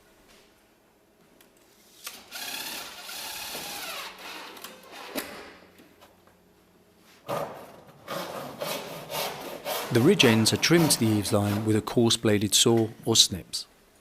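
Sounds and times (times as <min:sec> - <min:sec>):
cordless drill driving: 0:02.1 - 0:04.6
saw stroke: 0:08.1 - 0:11.8.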